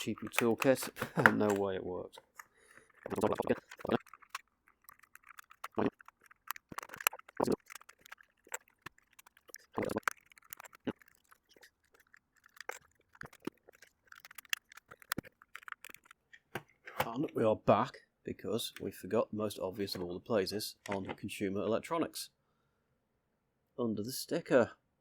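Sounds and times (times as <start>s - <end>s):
plastic clicks and scrapes: 0.0s - 17.3s.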